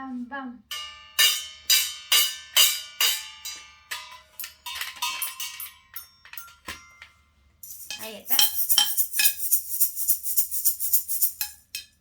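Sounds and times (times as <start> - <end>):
toy xylophone hits: 0.7 - 9.4.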